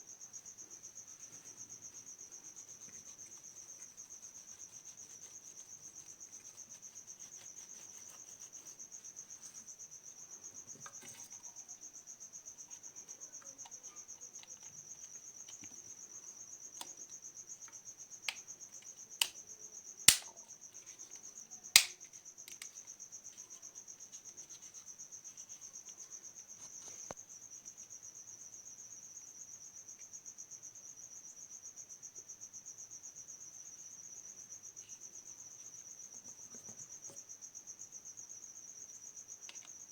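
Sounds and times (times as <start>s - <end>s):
cricket trilling: 0.0s - 39.9s
sharp clicks: 20.1s - 20.3s, 21.8s - 22.7s.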